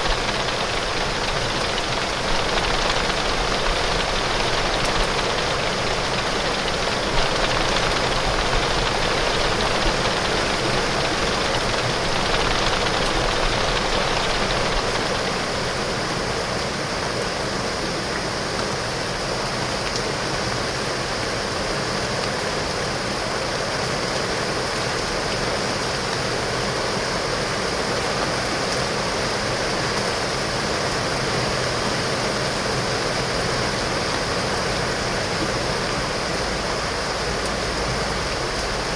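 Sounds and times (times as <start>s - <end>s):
heavy rain on window glass: 0.0s - 16.6s.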